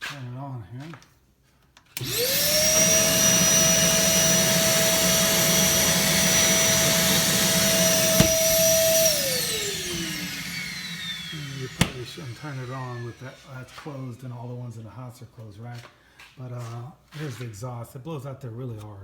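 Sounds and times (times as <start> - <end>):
vacuum motor whine: 2.0 - 13.6
sharp click: 7.7 - 12.3.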